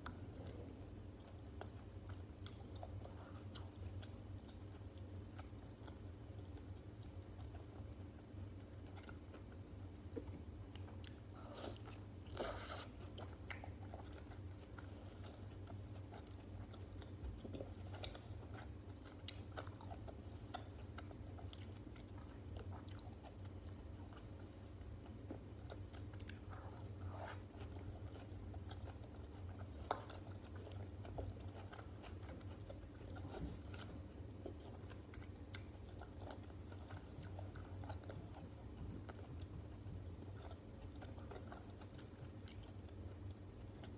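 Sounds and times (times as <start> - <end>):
chewing and biting food: 0.0 - 43.9
steady low hum: 0.0 - 43.9
soft mouth clicks and crunches: 8.6 - 43.9.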